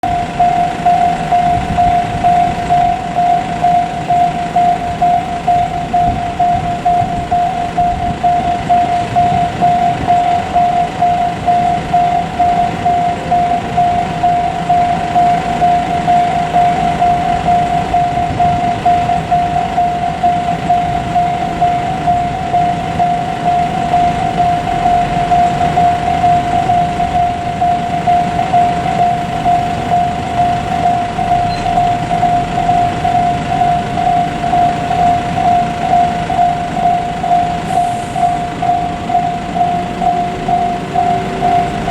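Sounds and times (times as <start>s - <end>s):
crossing warning bell ringing: 0.0s - 41.9s
freight train rumble: 0.0s - 41.9s.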